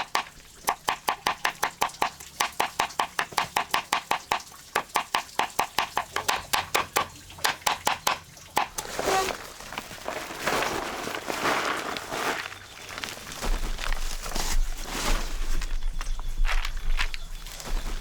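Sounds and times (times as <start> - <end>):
rustling: 8.7 - 18.0.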